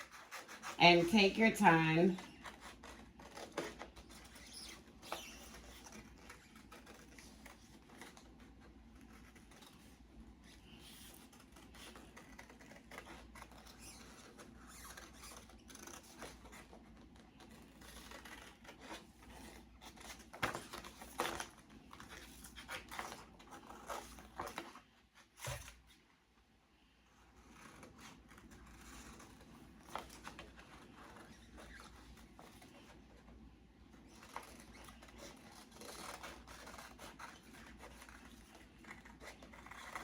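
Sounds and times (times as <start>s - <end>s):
paper rustling: 0.0s - 26.0s
scissors snipping paper: 34.2s - 40.0s.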